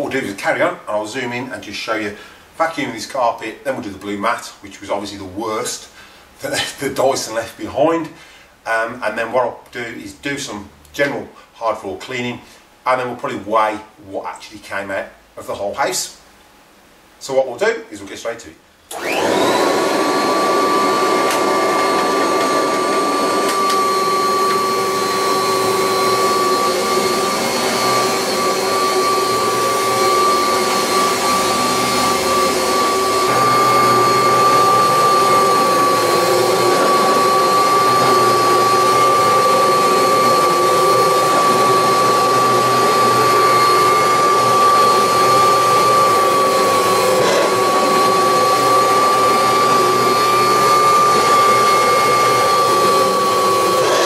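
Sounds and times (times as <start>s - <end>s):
vacuum cleaner running: 18.9s - 54.0s.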